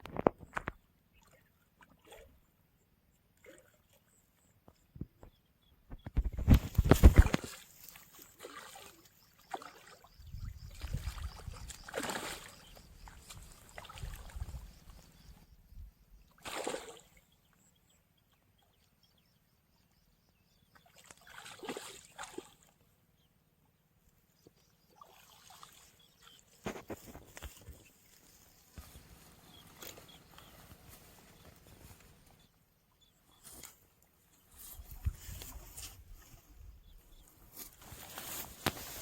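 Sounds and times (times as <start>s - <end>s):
water sloshing and splashing: 6.6s - 15.0s, 20.8s - 22.8s.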